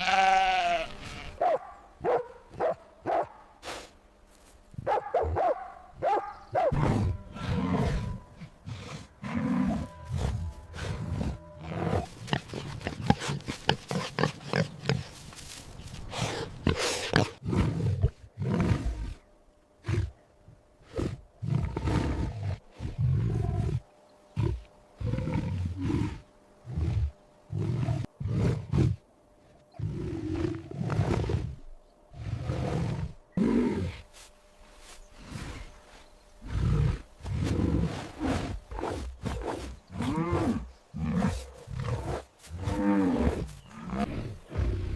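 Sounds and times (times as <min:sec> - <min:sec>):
big cat roaring and growling: 0:20.8 - 0:23.8, 0:29.8 - 0:34.0.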